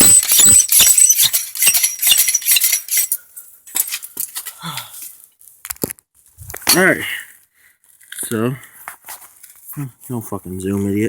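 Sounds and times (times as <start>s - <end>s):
high pump squeak: 0.0s - 3.2s
bicycle pump clinking and rattling: 0.0s - 5.2s.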